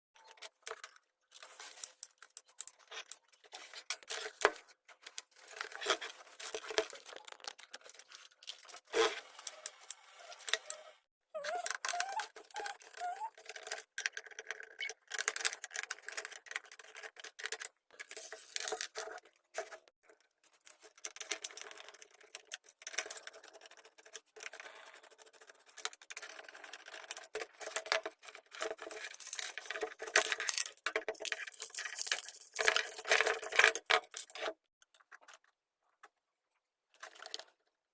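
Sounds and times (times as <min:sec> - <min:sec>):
crinkling: 0:00.2 - 0:23.5.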